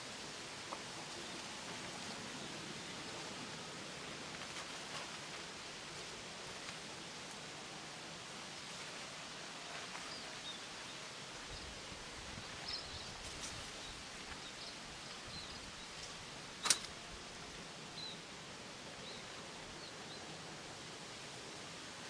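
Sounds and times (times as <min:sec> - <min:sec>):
steady outdoor hiss: 0:00.0 - 0:22.0
faint bird chirps: 0:12.4 - 0:18.3
sharp click or snap: 0:16.6 - 0:17.0.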